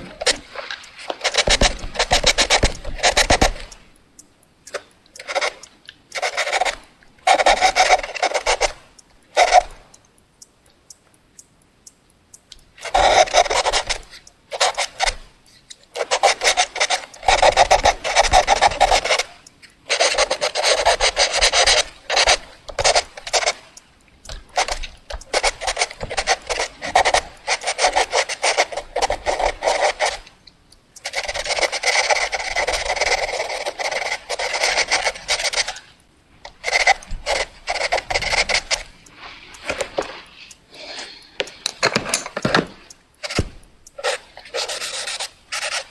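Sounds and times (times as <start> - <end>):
pencil drawing on paper: 16.0 - 19.3, 19.9 - 23.6, 24.6 - 30.2, 31.0 - 35.8, 43.2 - 45.9.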